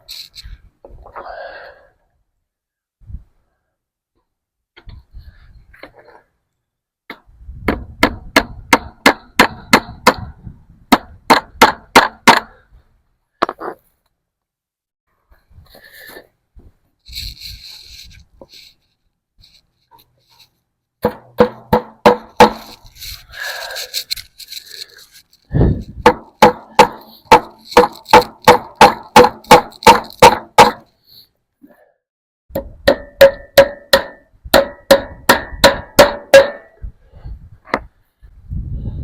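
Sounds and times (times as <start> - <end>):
hammer striking fence staples: 32.6 - 36.7.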